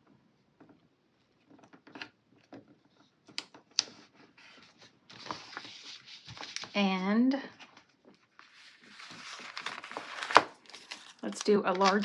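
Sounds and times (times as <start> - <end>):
small taps and clicks: 1.4 - 3.9
sticker peeling rustle: 8.4 - 12.0.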